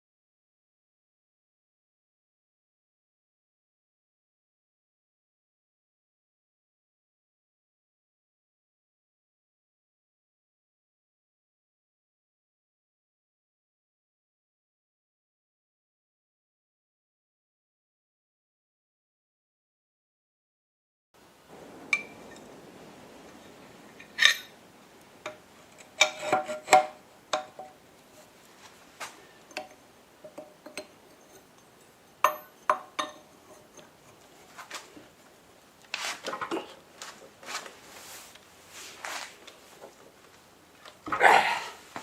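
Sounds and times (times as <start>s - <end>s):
metal parts and tools clinking: 24.0s - 24.6s
metal scraping: 25.3s - 27.0s.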